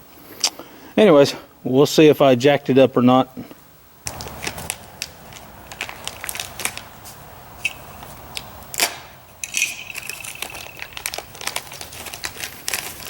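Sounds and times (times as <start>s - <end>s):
plastic packaging crinkling: 4.1s - 13.0s.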